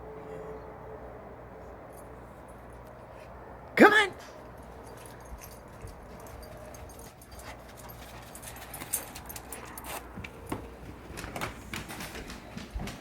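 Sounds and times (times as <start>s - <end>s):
dog moving with light clicks: 4.4s - 13.0s.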